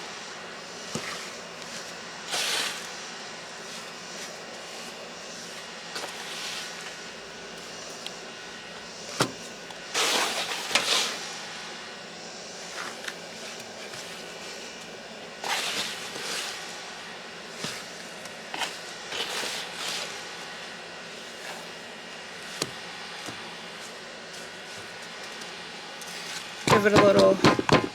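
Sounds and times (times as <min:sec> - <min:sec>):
sharp knocks: 0:26.7 - 0:27.9.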